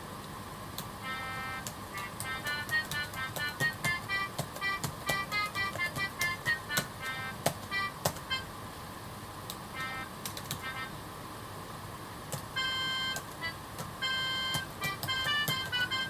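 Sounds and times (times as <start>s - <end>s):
computer keyboard keys clacking: 1.6s - 8.4s, 9.8s - 10.8s, 12.3s - 16.0s
synthesized notes: 12.6s - 16.0s.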